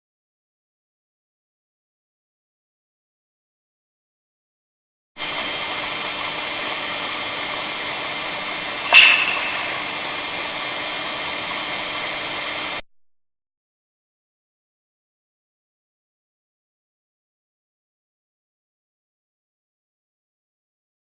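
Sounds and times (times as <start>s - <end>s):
recording hiss: 5.2s - 12.8s
sharp ringing clap: 8.8s - 10.1s.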